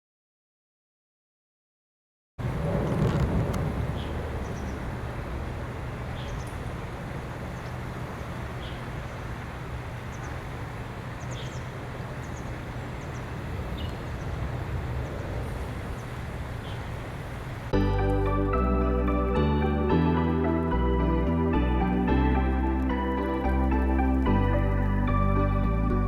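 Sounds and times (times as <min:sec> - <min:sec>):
faint bird chirps: 0:11.2 - 0:14.4
low hum: 0:17.8 - 0:26.0
music: 0:17.8 - 0:26.0.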